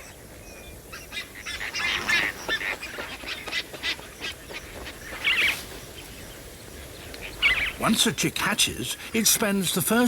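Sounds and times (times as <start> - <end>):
flamingos calling: 0.9 - 5.6.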